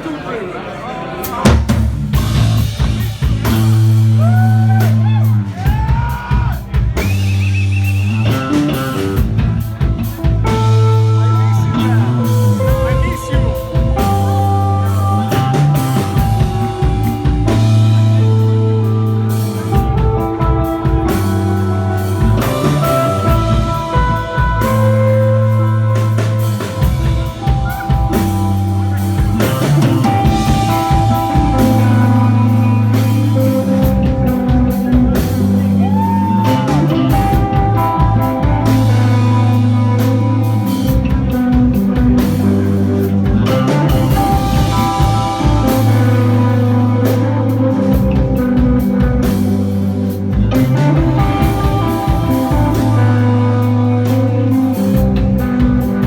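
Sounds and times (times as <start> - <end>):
drum kit: 1.2 - 56.0
bass guitar low notes: 1.7 - 56.0
droning electric guitar: 2.5 - 56.0.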